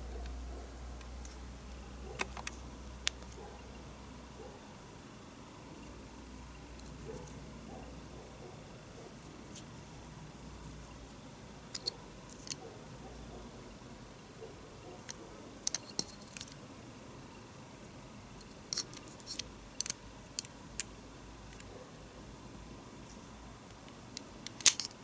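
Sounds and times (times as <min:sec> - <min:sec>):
small objects clicking and tapping: 0:15.0 - 0:16.6.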